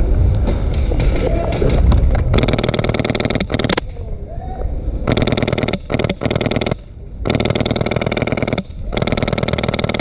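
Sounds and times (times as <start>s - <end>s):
airsoft gun firing full-auto: 2.3s - 3.8s, 5.1s - 10.0s.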